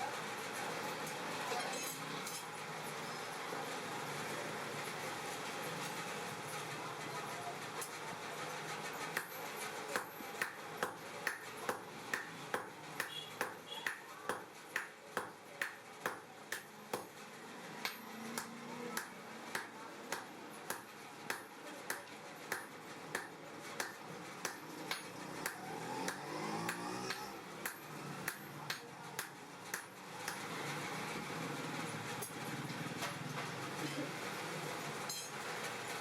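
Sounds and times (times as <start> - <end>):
hammer striking steel on anvil: 10.0 - 17.2, 17.8 - 30.5.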